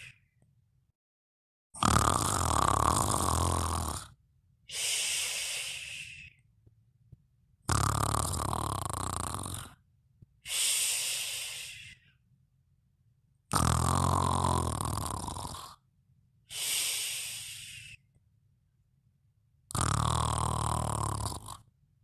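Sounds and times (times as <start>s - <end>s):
person snoring: 0.0s - 0.2s, 1.8s - 6.4s, 7.7s - 9.8s, 10.5s - 12.1s, 13.5s - 15.8s, 16.5s - 18.1s, 19.7s - 21.7s
airy hissing breaths: 4.7s - 6.4s, 10.5s - 12.1s, 16.5s - 18.0s.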